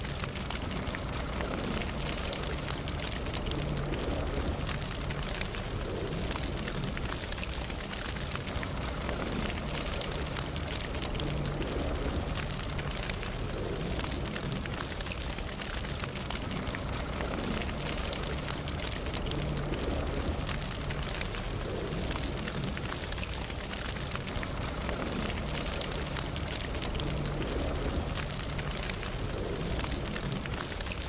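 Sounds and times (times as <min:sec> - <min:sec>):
campfire crackling and popping: 0:00.0 - 0:31.0
low rumble of flames: 0:00.0 - 0:31.0.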